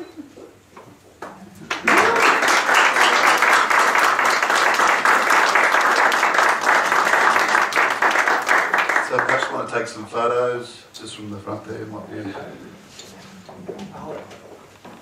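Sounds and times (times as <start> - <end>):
crowd applauding: 1.6 - 9.8.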